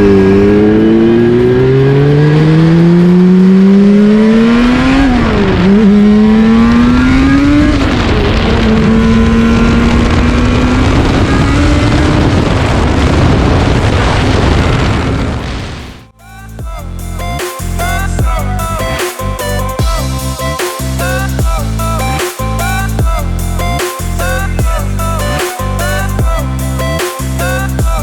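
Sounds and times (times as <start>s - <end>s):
motorcycle engine revving: 0.0s - 13.1s.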